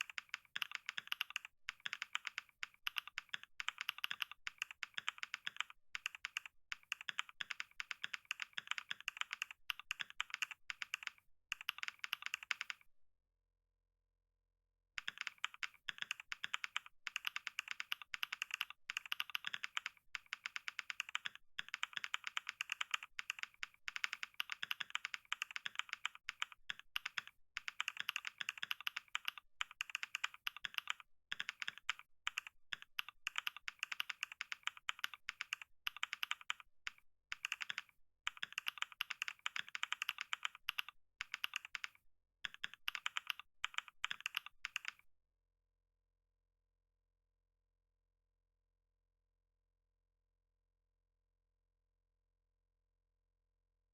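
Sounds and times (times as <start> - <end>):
fast keyboard typing: 0.0 - 12.9, 15.0 - 45.0.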